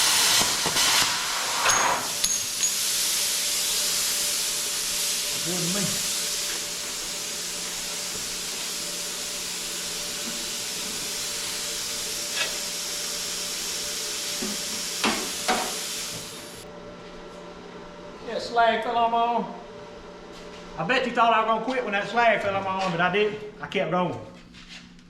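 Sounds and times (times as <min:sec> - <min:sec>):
cutting torch hissing: 0:00.0 - 0:16.6.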